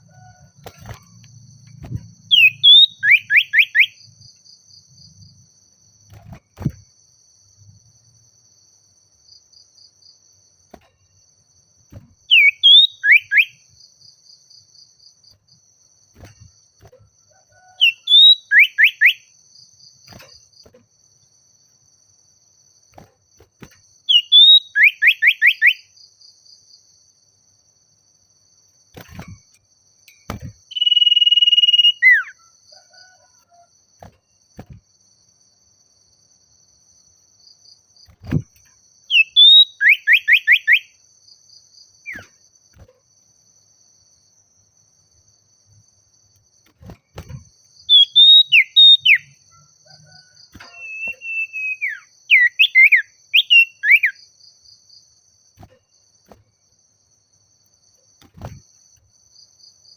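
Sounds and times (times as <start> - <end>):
insect trill: 0.0 - 59.9
bird whistling call: 2.3 - 4.0, 12.3 - 13.6, 17.8 - 19.2, 24.1 - 25.8, 30.7 - 32.4, 39.1 - 40.9, 47.9 - 49.3, 50.6 - 54.2.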